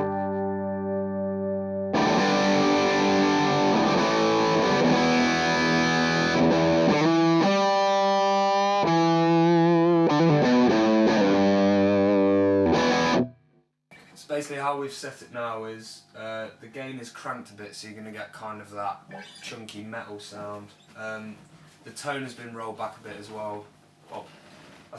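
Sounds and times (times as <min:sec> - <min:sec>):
distorted electric guitar chords: 0:00.0 - 0:13.4.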